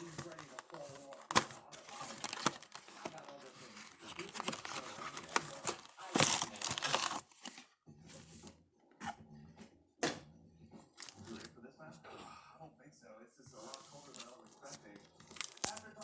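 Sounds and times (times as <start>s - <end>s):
wrapper tearing and crinkling: 0.0s - 7.6s, 13.7s - 16.0s.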